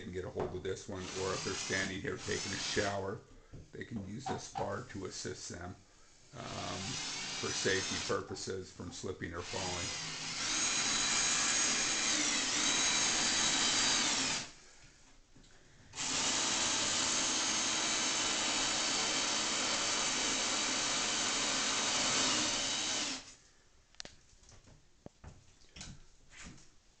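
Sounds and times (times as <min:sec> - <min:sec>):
electric drill whining: 0:06.4 - 0:08.1, 0:09.5 - 0:14.6, 0:16.0 - 0:23.4.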